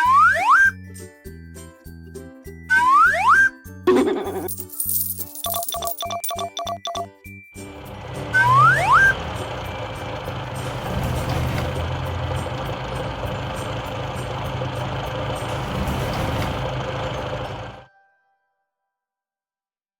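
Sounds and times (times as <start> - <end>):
cartoon truck engine: 0.0 - 0.8, 2.7 - 4.5, 5.5 - 17.9
rising whistles: 8.2 - 9.9.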